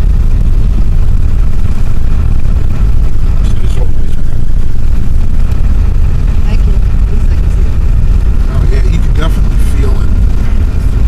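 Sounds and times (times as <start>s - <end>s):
car driving on icy road: 0.0s - 11.0s.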